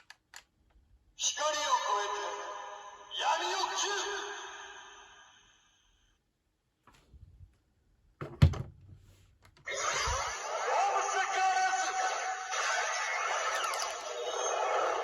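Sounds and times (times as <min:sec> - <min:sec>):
electronic toy sound effect: 0:12.4 - 0:15.0.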